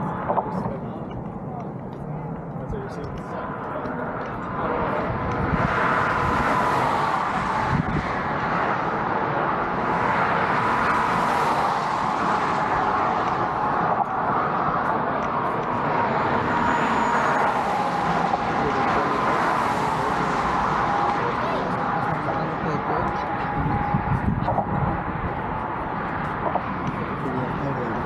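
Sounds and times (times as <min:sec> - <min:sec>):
road traffic rush: 0:00.0 - 0:28.0.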